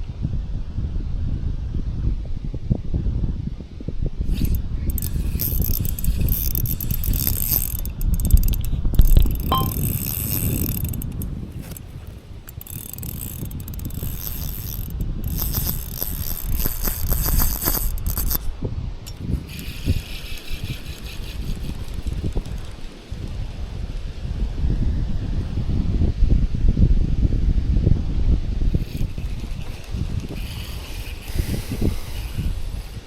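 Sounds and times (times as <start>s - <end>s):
wind rumbling on microphone: 0.0s - 33.0s
spinning reel ratcheting whirr: 4.2s - 24.0s, 28.7s - 33.0s.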